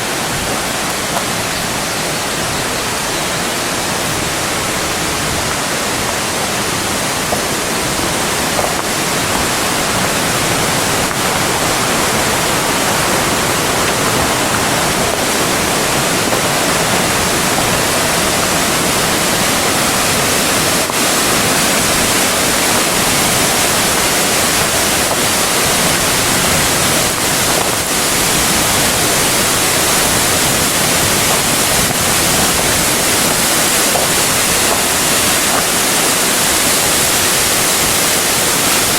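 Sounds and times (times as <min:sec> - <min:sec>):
waterfall rushing: 0:00.0 - 0:38.9.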